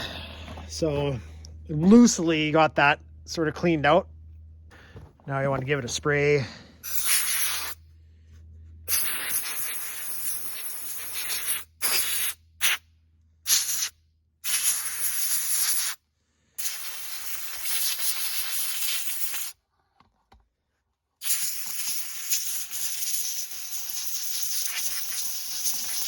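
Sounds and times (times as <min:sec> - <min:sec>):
compressed air blow gun hissing: 0:06.8 - 0:07.8, 0:08.9 - 0:12.8, 0:13.5 - 0:16.0, 0:16.6 - 0:19.6, 0:21.2 - 0:26.0.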